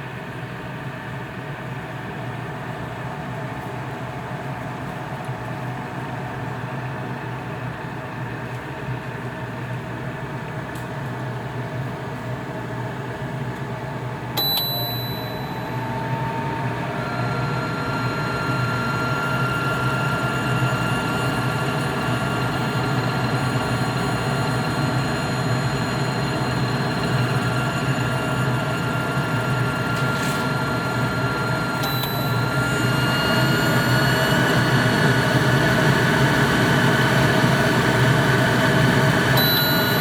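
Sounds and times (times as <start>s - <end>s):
exhaust fan blowing: 0.0s - 40.0s
high-pitched fan whine: 0.0s - 40.0s
short beep: 14.4s - 15.8s, 31.8s - 32.8s, 39.4s - 40.0s.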